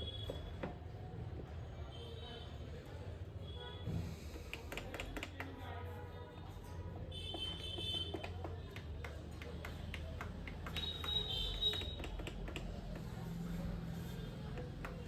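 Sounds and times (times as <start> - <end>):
plastic buttons clicking: 4.5 - 5.5, 9.6 - 13.0.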